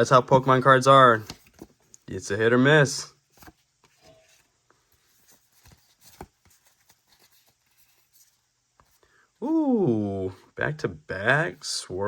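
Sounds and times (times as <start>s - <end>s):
cards clicking and rustling: 1.1s - 2.0s, 3.3s - 8.3s.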